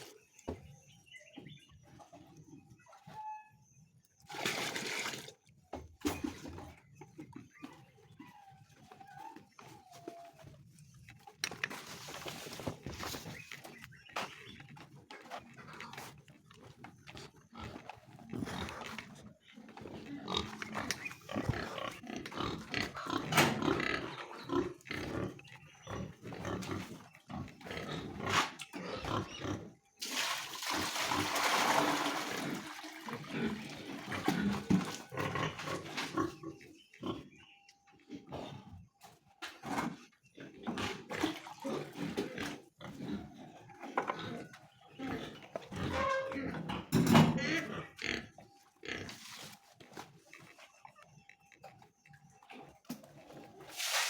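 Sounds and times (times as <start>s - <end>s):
movement noises: 4.2s - 29.3s, 32.3s - 54.0s
pigs calling: 12.2s - 30.0s, 32.3s - 53.6s.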